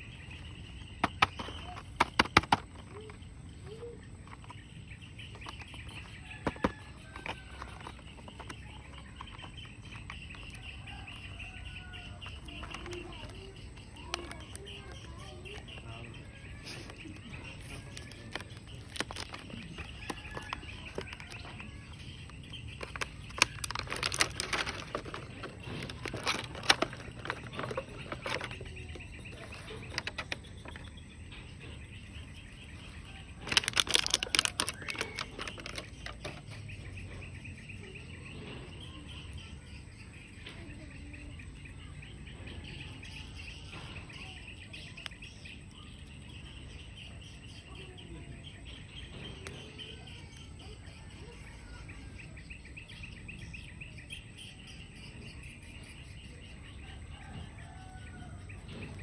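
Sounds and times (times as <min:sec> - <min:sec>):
crackling handling noise: 0:00.0 - 0:37.2
birds chirping: 0:00.0 - 0:59.0.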